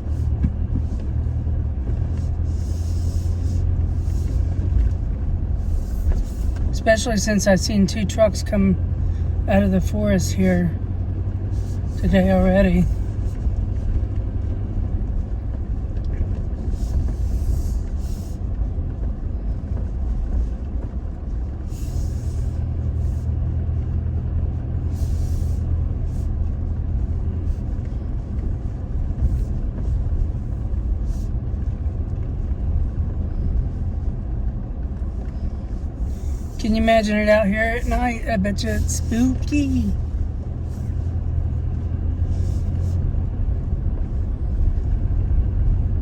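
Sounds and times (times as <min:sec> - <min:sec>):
engine and tyres rumbling: 0:00.0 - 0:46.0.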